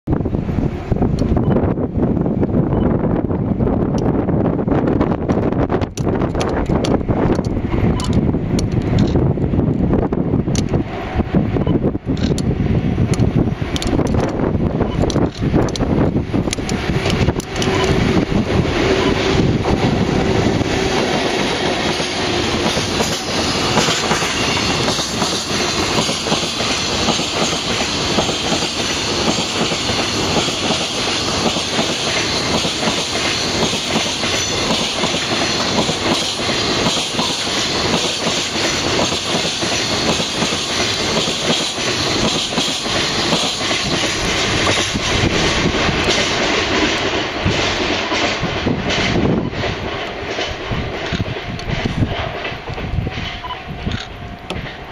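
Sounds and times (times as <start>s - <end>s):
freight train wheels clattering: 12.2s - 54.9s.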